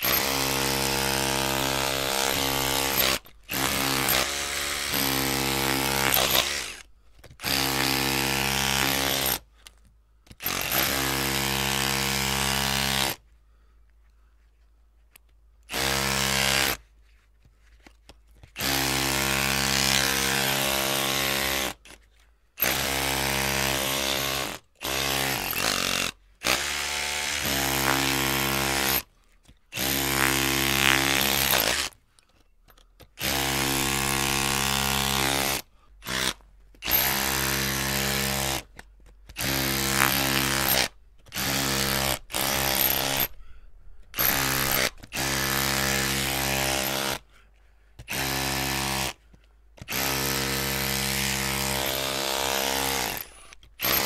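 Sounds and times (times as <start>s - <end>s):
electric drill whining: 0.0s - 9.4s, 10.4s - 13.1s, 15.7s - 16.8s, 22.6s - 29.0s, 29.8s - 31.9s, 33.2s - 38.6s, 39.4s - 43.4s, 44.2s - 47.2s, 49.9s - 54.0s.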